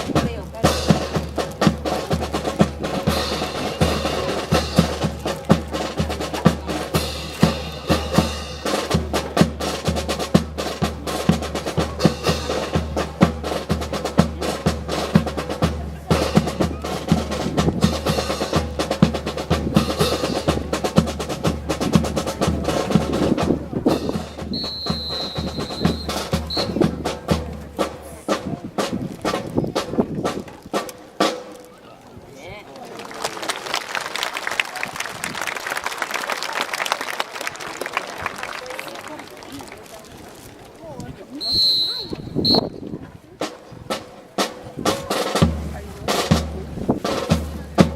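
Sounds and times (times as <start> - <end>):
brass band playing a march: 0.0 - 31.6, 41.4 - 47.9
low drum beat: 0.0 - 31.6, 42.1 - 47.9
snare drums: 0.0 - 31.8, 41.3 - 47.9.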